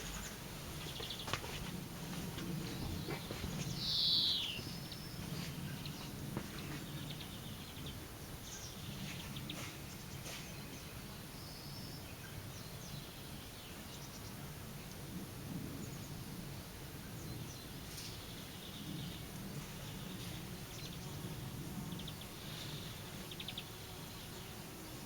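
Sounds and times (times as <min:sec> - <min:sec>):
birds chirping: 0:00.0 - 0:10.4.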